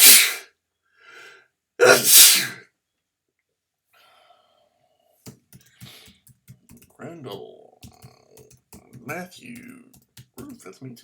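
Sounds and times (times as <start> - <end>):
man sneezing: 0.0 - 0.4, 1.8 - 2.6
short breath: 0.0 - 0.4, 1.0 - 2.6.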